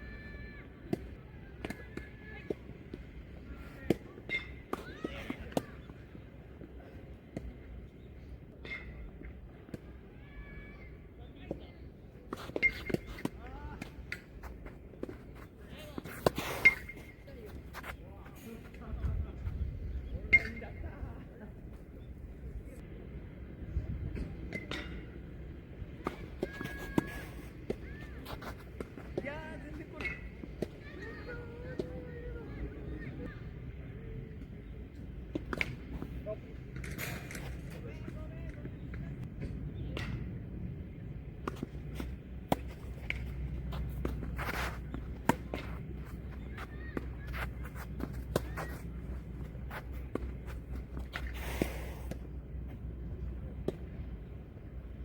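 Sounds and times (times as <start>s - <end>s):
shoe squeaks: 12.4s - 13.2s, 16.1s - 18.4s, 43.7s - 50.1s
footsteps on court: 41.4s - 52.2s.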